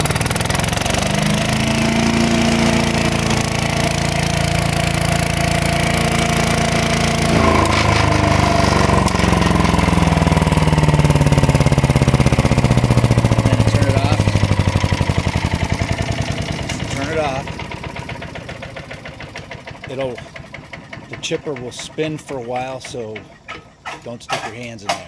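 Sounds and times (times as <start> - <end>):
wood chipper engine running: 0.0 - 23.4
high falling whine: 1.1 - 18.5.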